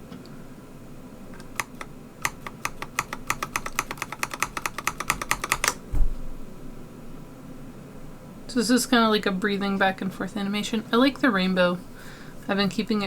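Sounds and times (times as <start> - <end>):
mechanical keyboard keystrokes: 1.4 - 5.8.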